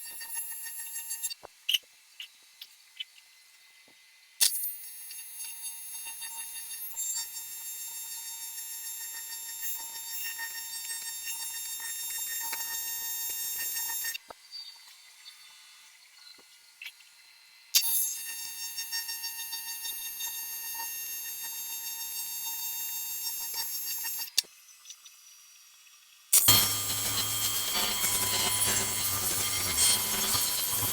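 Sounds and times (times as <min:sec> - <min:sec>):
welding arc buzzing: 0:26.4 - 0:30.9
welding arc striking crack: 0:26.4 - 0:30.9.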